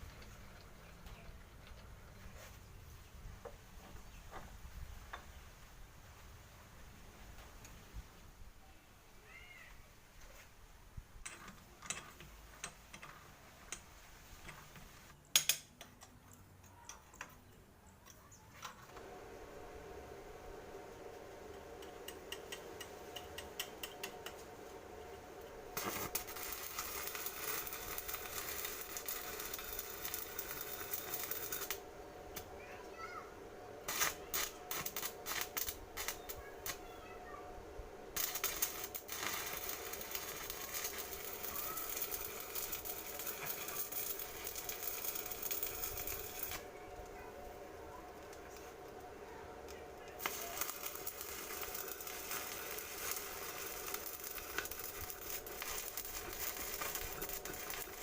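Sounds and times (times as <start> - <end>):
cutter scraping metal: 38.2 - 46.7, 50.2 - 58.0.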